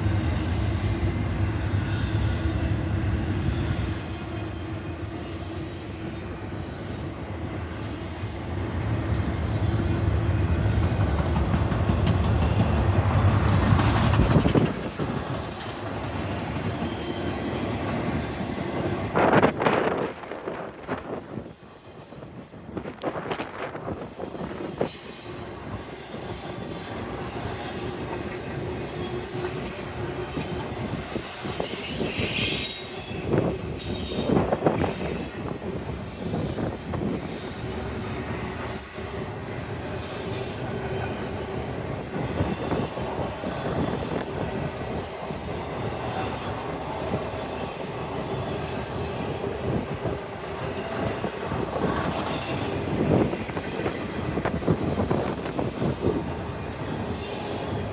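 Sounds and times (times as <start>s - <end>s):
train wheels clattering over rail joints: 10.8s - 17.0s
train wheels squealing: 11.8s - 18.5s, 23.6s - 41.4s.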